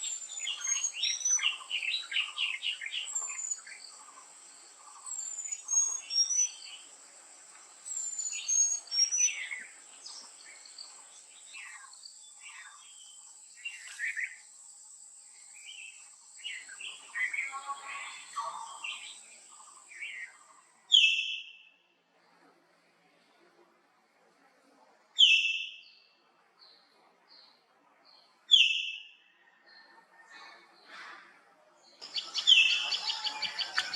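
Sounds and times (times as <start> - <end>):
wild birds chirping: 0.0 - 22.9, 25.2 - 33.9.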